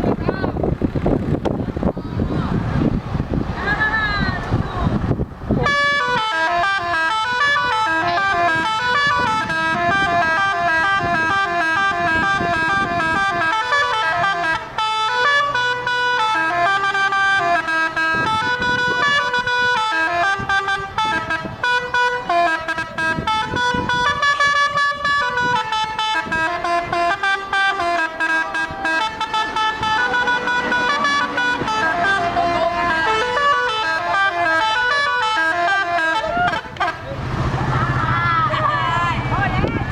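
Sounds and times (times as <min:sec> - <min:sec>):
multi-tone bus horn tune: 0:05.6 - 0:37.2.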